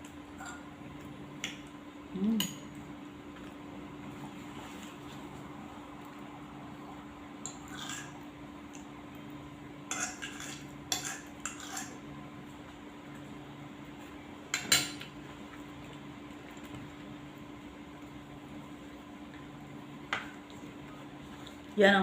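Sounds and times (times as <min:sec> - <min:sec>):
fork clinking and scraping on plate: 0:09.9 - 0:12.0.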